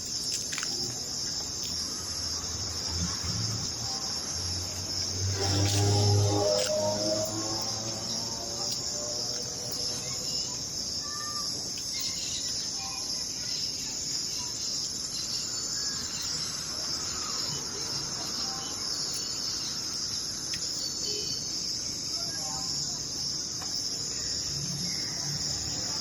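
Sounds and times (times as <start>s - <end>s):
crickets chirping: 0.0s - 26.0s.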